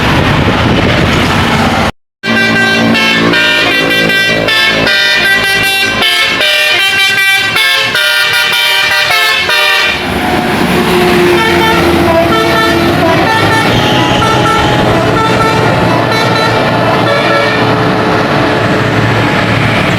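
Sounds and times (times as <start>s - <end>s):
bus engine running: 0.0s - 19.9s
bus horn playing melody: 2.2s - 18.0s.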